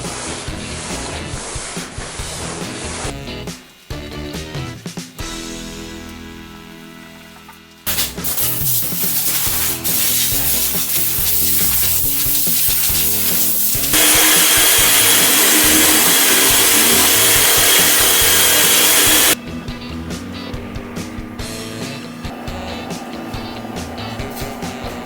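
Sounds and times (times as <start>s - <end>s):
power tool abrading sheet metal: 7.9s - 25.0s.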